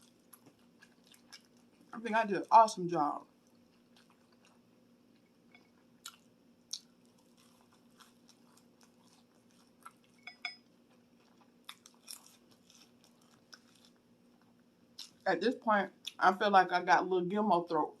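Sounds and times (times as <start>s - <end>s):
person chewing food: 0.0s - 2.0s, 3.3s - 15.2s.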